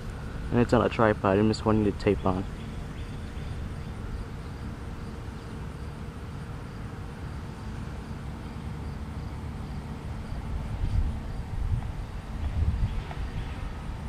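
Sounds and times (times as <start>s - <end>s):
steady low rumble: 0.0s - 14.0s.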